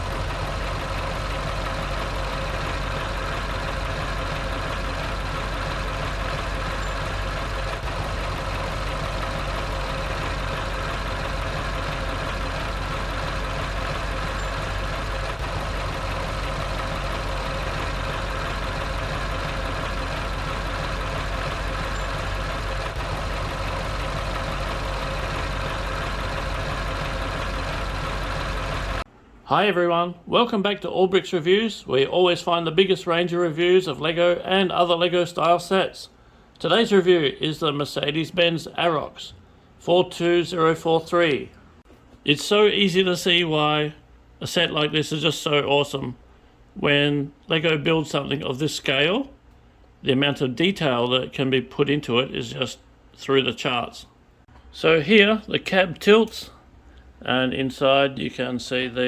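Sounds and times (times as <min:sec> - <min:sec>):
large engine idling: 0:00.0 - 0:29.4.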